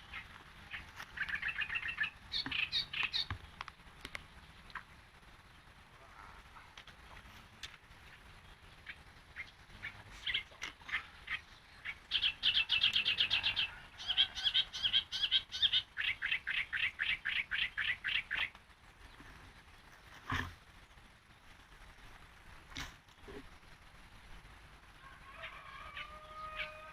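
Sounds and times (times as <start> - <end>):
bulbul calling: 0.0 - 3.5, 8.0 - 19.4.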